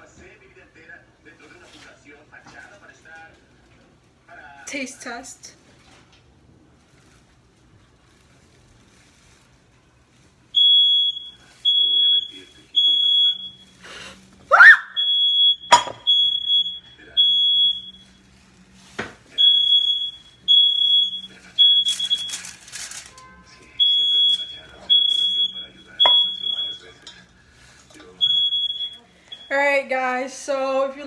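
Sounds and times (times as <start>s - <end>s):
smoke alarm beeping: 10.5s - 13.9s, 14.7s - 18.3s, 19.3s - 27.1s, 28.0s - 29.8s.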